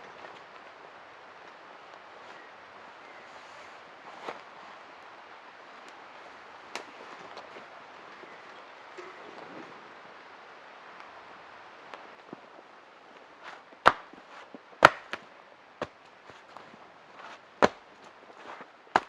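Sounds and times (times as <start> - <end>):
soft steady hiss: 0.0 - 19.0
wood being chopped: 13.8 - 14.2, 14.8 - 15.2.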